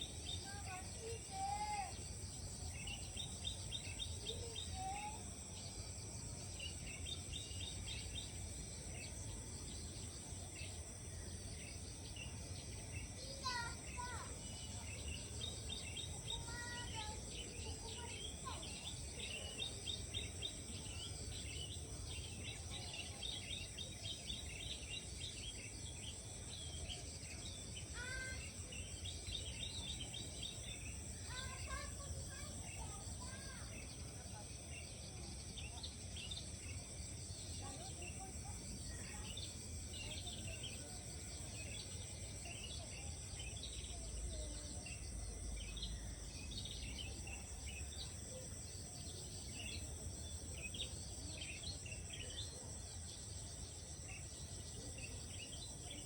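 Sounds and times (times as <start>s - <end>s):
high-pitched insect drone: 0.0s - 56.0s
birds chirping and trilling: 11.6s - 34.9s, 37.7s - 56.0s.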